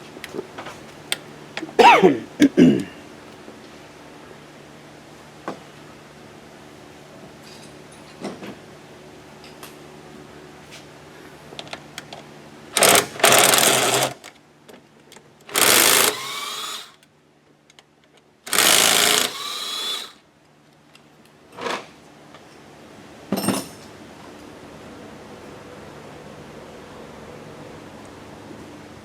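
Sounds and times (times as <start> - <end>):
power ratchet spinning: 12.8 - 14.2, 15.5 - 17.0, 18.5 - 20.2.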